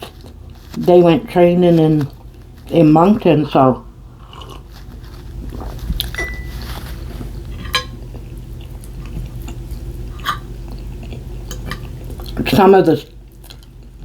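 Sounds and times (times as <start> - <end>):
cutlery clinking and scraping on plate: 7.6 - 8.0.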